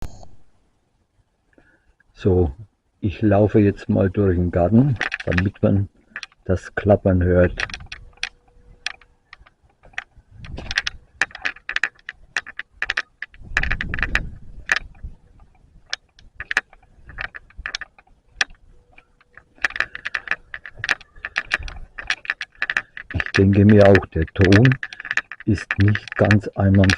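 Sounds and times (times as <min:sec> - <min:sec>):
camera switch rattling and clicking: 0:04.9 - 0:06.4, 0:07.5 - 0:26.9.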